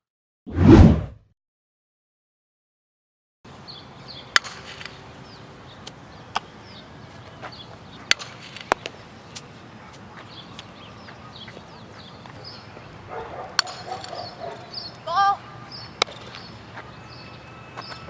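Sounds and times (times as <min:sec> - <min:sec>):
birds chirping: 0:03.5 - 0:18.0
sharp softball knocks: 0:04.3 - 0:05.0, 0:08.1 - 0:08.9, 0:13.6 - 0:14.2, 0:16.0 - 0:16.4.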